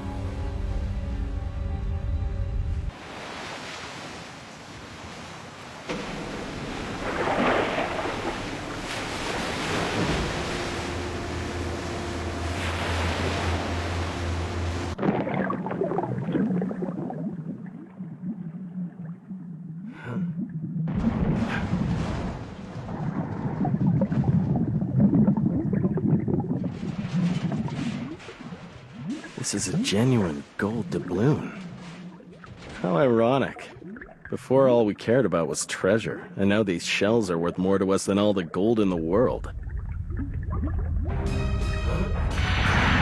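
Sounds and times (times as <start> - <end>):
waves and surf rushing: 2.7 - 15.5, 29.3 - 31.7
steady low hum: 8.2 - 15.0.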